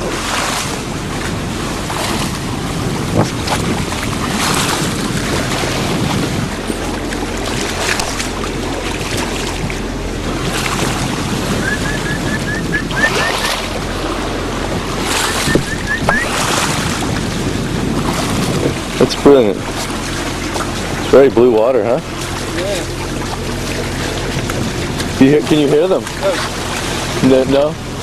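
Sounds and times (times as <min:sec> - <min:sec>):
steady low hum: 0:00.0 - 0:28.0
wind and water rushing: 0:00.0 - 0:28.0
dolphins chirping: 0:11.5 - 0:13.8, 0:15.1 - 0:16.4.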